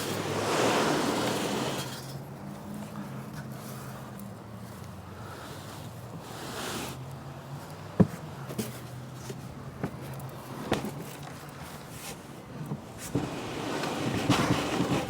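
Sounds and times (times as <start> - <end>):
concrete scraping swish: 0.0 - 2.0.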